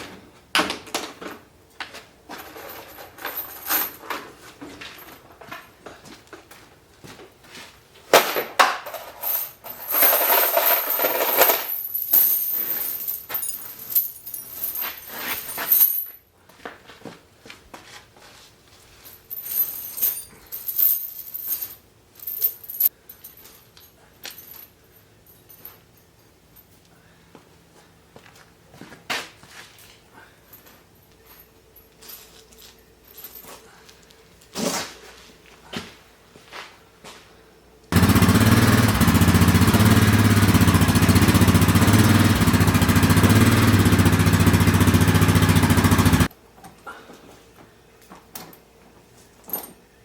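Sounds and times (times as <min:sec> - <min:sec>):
metal clinking and clattering: 0:08.8 - 0:16.2.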